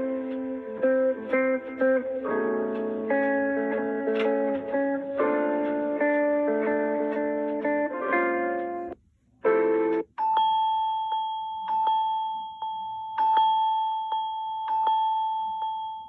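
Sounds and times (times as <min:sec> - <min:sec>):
strummed tune: 0:00.0 - 0:10.1
phone ringtones: 0:10.2 - 0:16.0.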